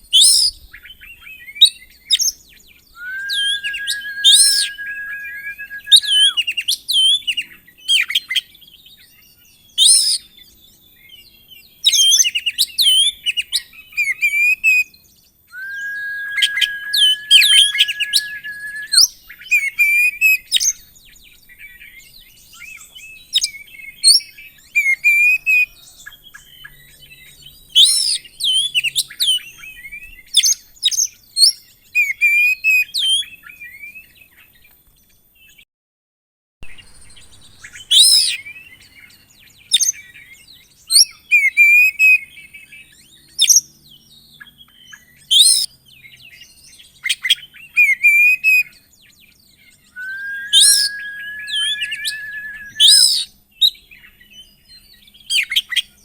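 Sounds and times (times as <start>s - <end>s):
songbird singing varied song: 0.1s - 7.3s, 15.0s - 19.2s, 48.9s - 55.3s
bird long steady whistle: 2.2s - 7.1s, 15.5s - 20.4s, 49.8s - 53.3s.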